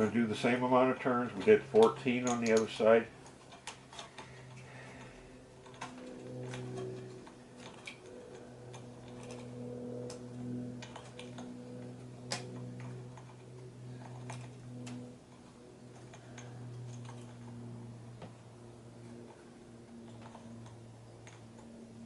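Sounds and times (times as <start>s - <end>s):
steady low hum: 0.0s - 22.0s
spring winding clicks: 1.4s - 17.6s.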